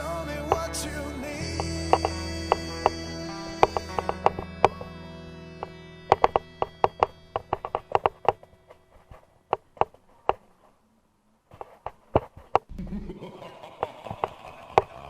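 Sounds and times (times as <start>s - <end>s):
background music: 0.0s - 9.5s.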